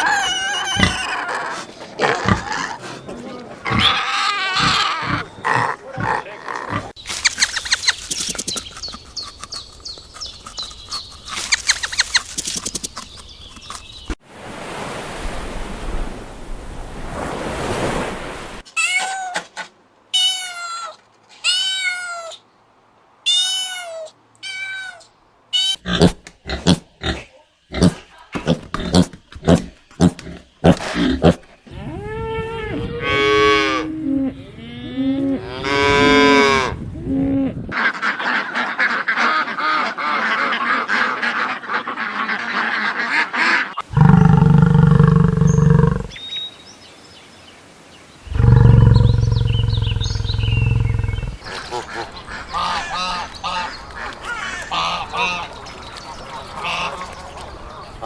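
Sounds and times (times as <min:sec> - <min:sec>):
animal calls: 0:00.0 - 0:07.9, 0:23.3 - 0:46.2, 0:48.3 - 0:55.4.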